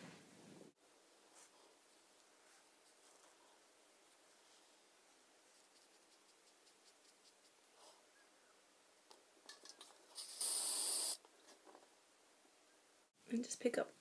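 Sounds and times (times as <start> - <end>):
faint rustles and ticks: 1.2 - 8.1
aerosol hairspray burst: 10.2 - 11.2.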